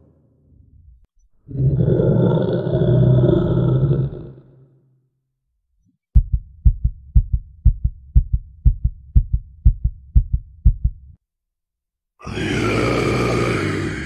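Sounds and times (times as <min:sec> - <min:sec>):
heartbeat thumps: 0:06.2 - 0:11.2.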